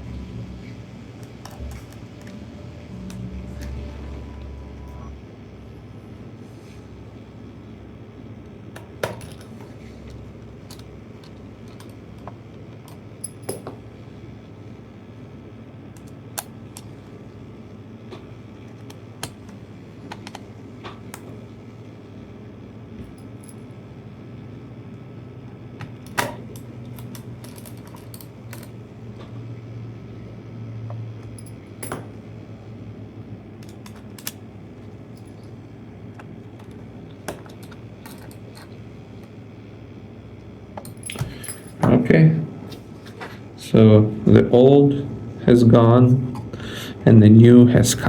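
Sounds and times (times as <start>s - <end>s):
steady low hum: 0.0s - 48.0s
clicks and clinks of small parts: 26.0s - 28.8s, 36.2s - 38.8s, 40.8s - 41.8s
clicks and metallic clinks: 36.6s - 38.8s, 40.8s - 41.9s.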